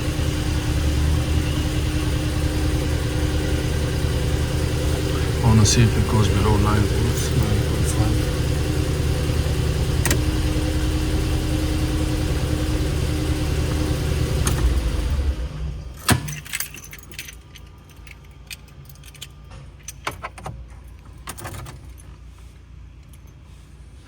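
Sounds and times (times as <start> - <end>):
car engine running: 0.0 - 20.0
ignition switch click: 10.0 - 10.3
keys jangling: 16.0 - 22.2.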